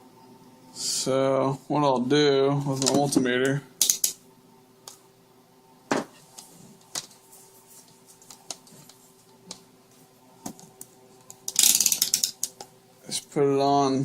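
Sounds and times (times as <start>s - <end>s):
faint steady hum: 0.0s - 14.0s
multimeter leads clicking and knocking: 3.8s - 4.2s, 10.5s - 12.7s.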